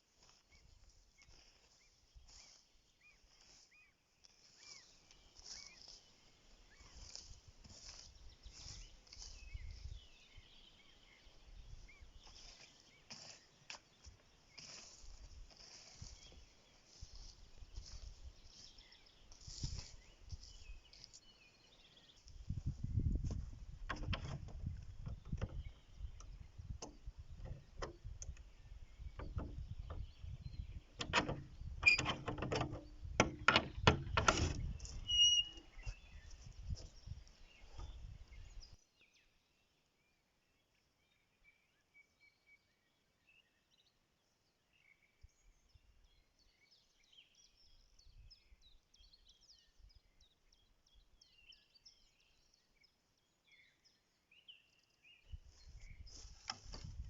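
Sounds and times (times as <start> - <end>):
small birds chirping: 0.0 - 57.0
sharp clicks and knocks: 23.8 - 28.5, 29.1 - 30.1, 30.9 - 35.0.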